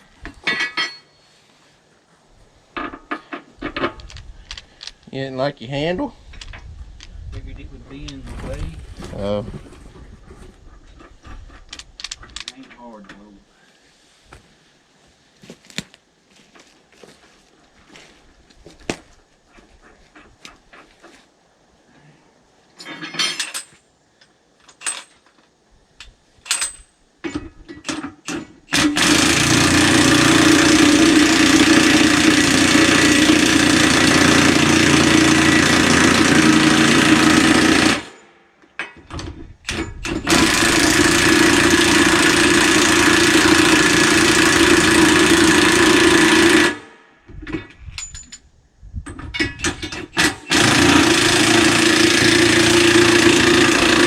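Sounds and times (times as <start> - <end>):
metal clinks of socket and bolts: 22.8 - 28.5, 47.5 - 50.0.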